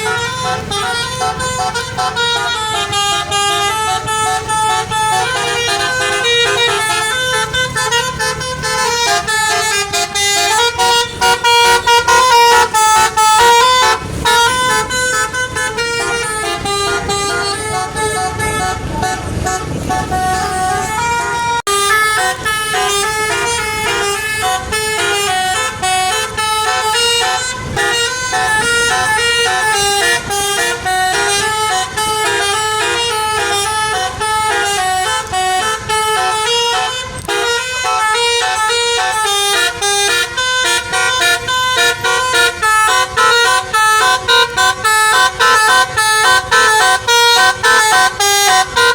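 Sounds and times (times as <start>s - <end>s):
bus horn playing melody: 0.0s - 48.9s.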